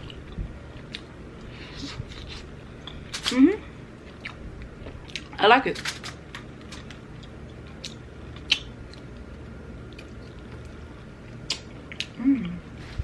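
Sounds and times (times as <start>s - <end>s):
mouth clicks and smacks chewing: 7.2s - 9.1s, 11.3s - 12.2s.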